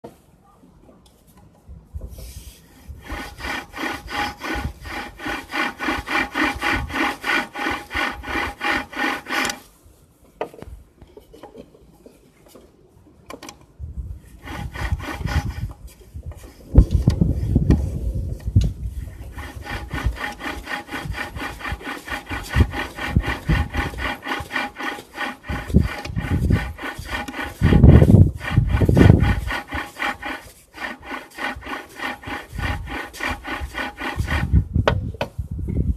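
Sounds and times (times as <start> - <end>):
supercharger rasping grinding noise: 3.0 - 9.6, 14.4 - 15.7, 19.2 - 34.7.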